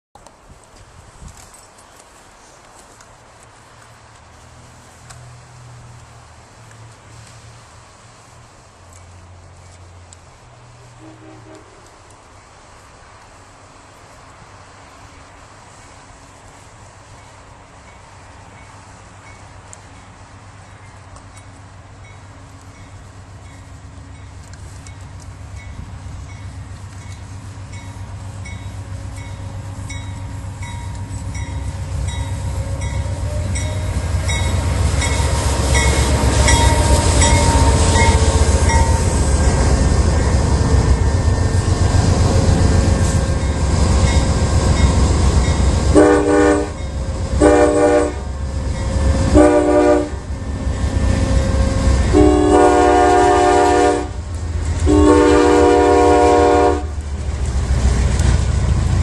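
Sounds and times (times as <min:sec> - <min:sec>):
diesel locomotives passing: 0:00.2 - 0:59.0
train air horn blasts: 0:10.8 - 0:12.0, 0:28.5 - 0:43.7, 0:45.9 - 0:50.3, 0:51.1 - 0:54.2, 0:54.8 - 0:57.0.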